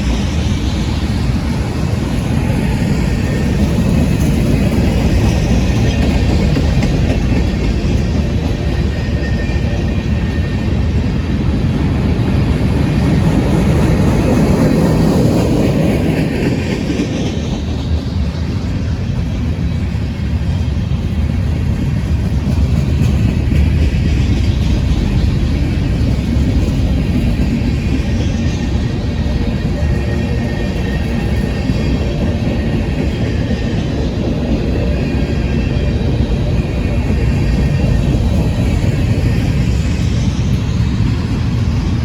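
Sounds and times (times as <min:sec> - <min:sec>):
train rumbling past: 0:00.0 - 0:42.0.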